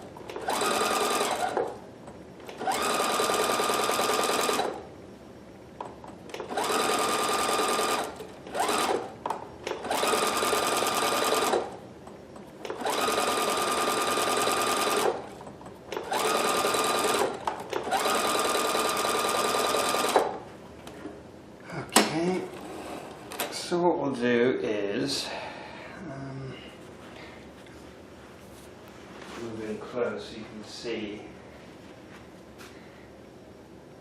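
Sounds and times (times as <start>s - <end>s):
sewing machine stitching: 0.3s - 1.8s, 2.4s - 4.8s, 6.3s - 11.8s, 12.6s - 20.4s.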